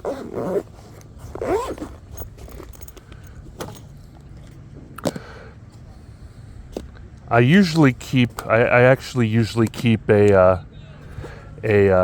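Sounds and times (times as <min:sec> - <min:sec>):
gear rustling in backpack: 0:00.0 - 0:04.0.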